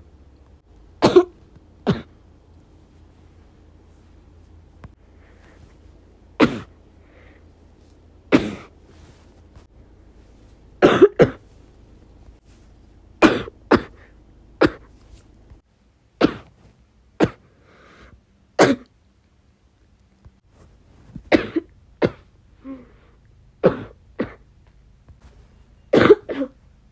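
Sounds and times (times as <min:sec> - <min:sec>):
person coughing: 0:01.0 - 0:02.2, 0:06.4 - 0:06.8, 0:08.3 - 0:08.8, 0:10.8 - 0:11.5, 0:13.2 - 0:14.9, 0:16.2 - 0:16.5, 0:17.2 - 0:17.5, 0:21.3 - 0:23.0, 0:23.6 - 0:24.5, 0:25.9 - 0:26.6.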